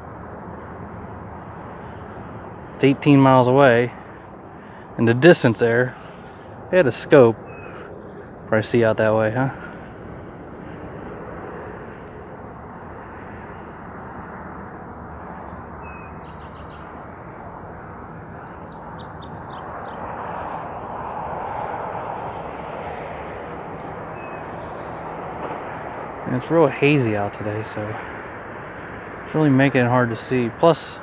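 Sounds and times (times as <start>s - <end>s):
outdoor rushing noise: 0.0s - 31.0s
high bird chirps: 23.8s - 25.1s.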